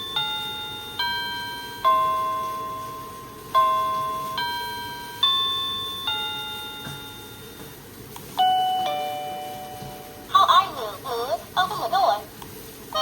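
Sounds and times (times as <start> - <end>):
electronic doorbell chime tune: 0.0 - 7.8, 8.4 - 10.3.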